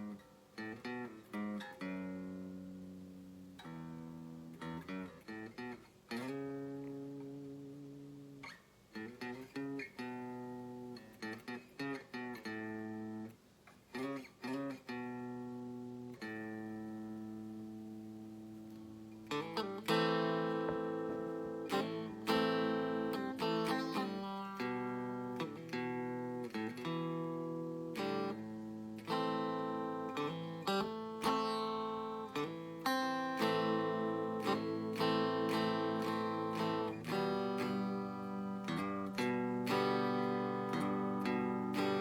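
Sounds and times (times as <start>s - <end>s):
clean electric guitar chords: 14.5s - 42.0s.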